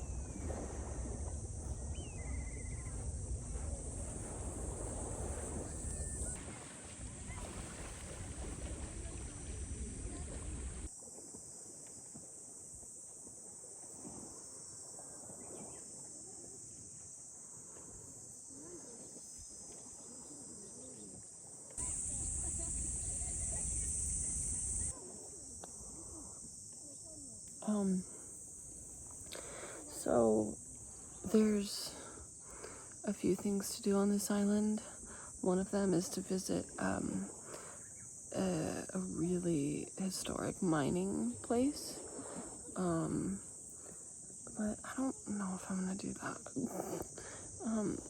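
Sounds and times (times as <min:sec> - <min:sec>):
low wind rumble: 0:00.0 - 0:06.4
high-pitched insect drone: 0:21.8 - 0:25.0.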